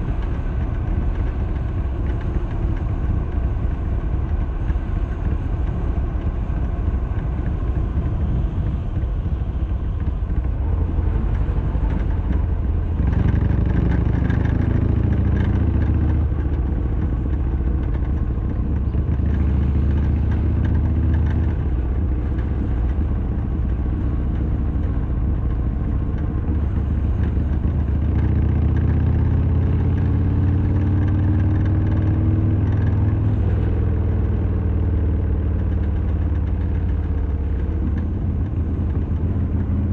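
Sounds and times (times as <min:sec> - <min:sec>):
motorcycle engine accelerating: 0:00.0 - 0:39.9
road and wind noise: 0:00.0 - 0:39.9.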